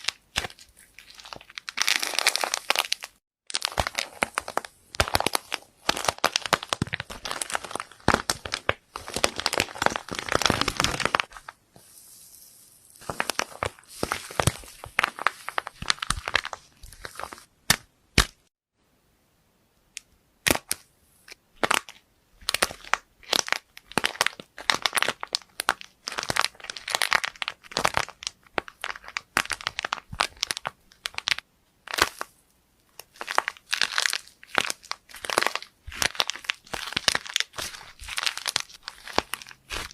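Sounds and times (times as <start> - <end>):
crunchy material crushed by hand: 0.0 - 11.5, 33.0 - 39.9.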